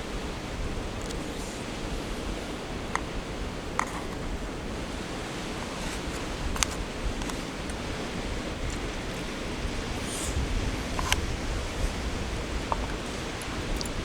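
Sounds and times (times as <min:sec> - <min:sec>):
ocean surf: 0:00.0 - 0:14.0
wind: 0:00.0 - 0:14.0
faint clicks: 0:01.0 - 0:01.2, 0:05.9 - 0:07.8, 0:12.6 - 0:14.0.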